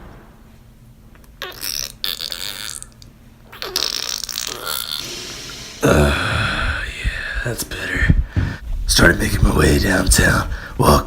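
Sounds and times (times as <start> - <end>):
man making guttural throat noises: 4.3 - 8.6.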